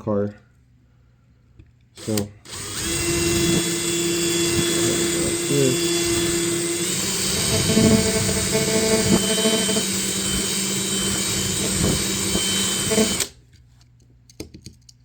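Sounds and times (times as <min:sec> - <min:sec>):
power drill drilling metal: 0:02.0 - 0:13.4.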